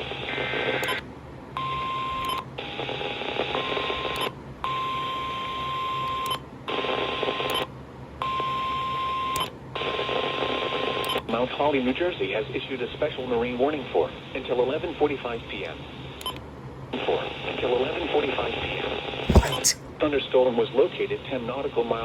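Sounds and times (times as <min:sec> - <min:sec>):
radio static: 0:19.3 - 0:19.8.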